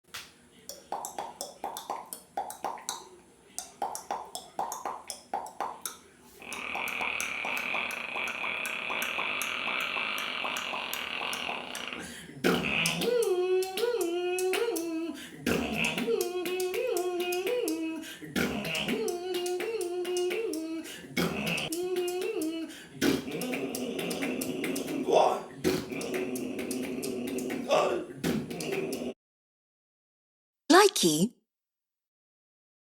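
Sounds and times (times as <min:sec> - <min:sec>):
vocal high-pitched tone with clicks: 0:00.7 - 0:29.2, 0:30.7 - 0:31.3
warbling vocal phrases: 0:06.4 - 0:29.2, 0:30.7 - 0:31.3.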